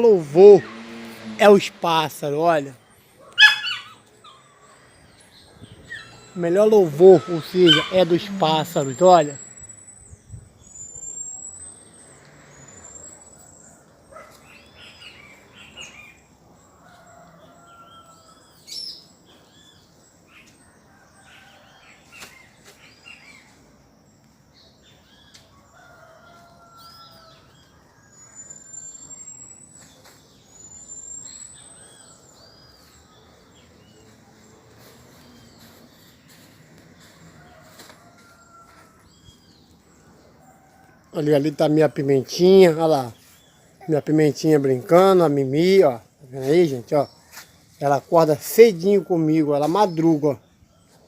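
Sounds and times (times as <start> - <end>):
songbirds chirping: 0.0 - 51.0
distant rooster crowing: 3.4 - 9.6, 12.4 - 18.8, 20.6 - 22.6, 25.0 - 29.3, 31.4 - 43.8, 48.7 - 51.0.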